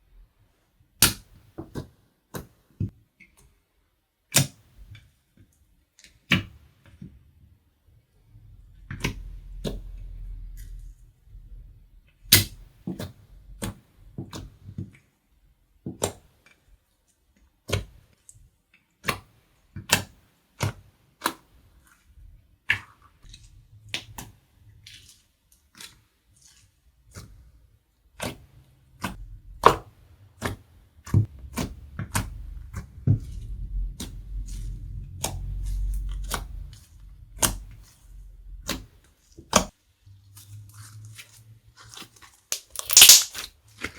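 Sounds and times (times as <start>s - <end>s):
slime clicking and popping: 42.5s - 43.5s.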